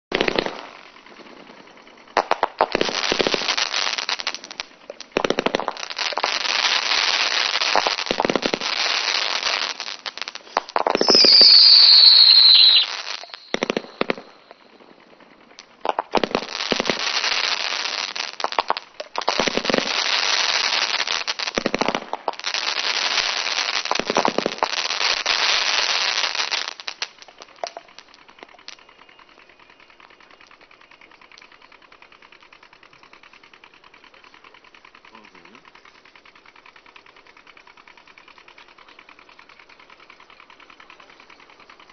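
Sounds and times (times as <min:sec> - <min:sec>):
fireworks shots and crackling: 0:00.1 - 0:29.1
loud falling whistle: 0:11.0 - 0:14.2.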